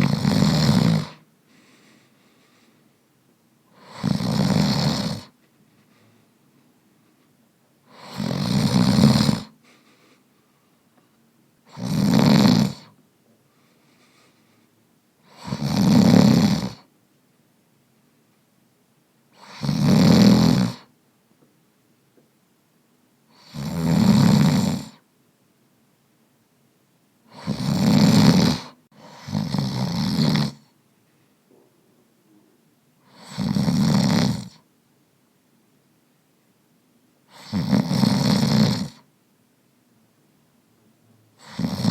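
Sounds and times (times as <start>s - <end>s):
slow regular snoring: 0.0s - 2.8s, 3.7s - 6.2s, 7.9s - 10.2s, 11.7s - 13.0s, 15.2s - 16.9s, 19.3s - 20.9s, 23.3s - 25.0s, 27.3s - 30.7s, 33.0s - 34.6s, 37.3s - 39.0s, 41.4s - 41.9s.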